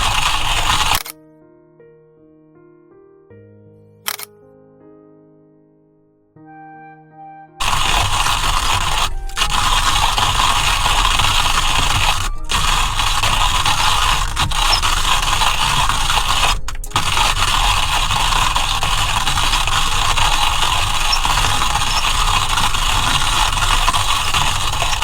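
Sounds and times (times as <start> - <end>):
hand-cranked coffee mill grinding: 0.0 - 1.1, 7.6 - 25.0.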